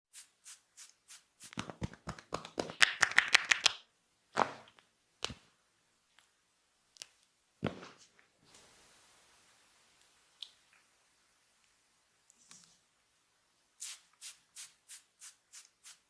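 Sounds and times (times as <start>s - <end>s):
hands slapping and tapping: 1.4s - 5.5s.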